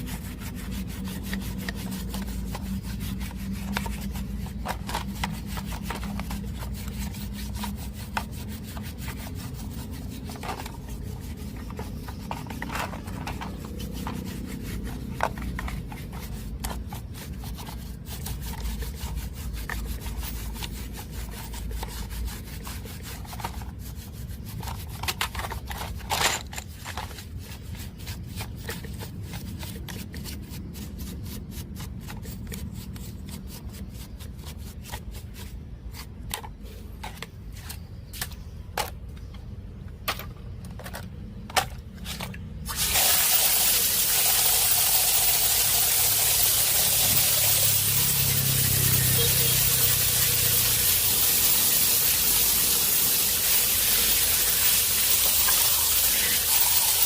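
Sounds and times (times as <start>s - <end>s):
small parts clicking and scraping: 0.0s - 57.0s
aerosol spray hiss: 42.8s - 57.0s.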